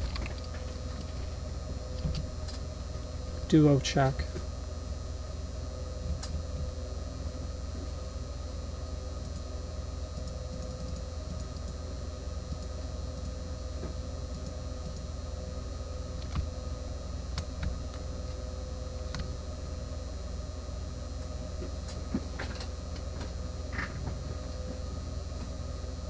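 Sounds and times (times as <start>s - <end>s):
computer clicks: 10.2s - 11.8s, 14.3s - 15.0s.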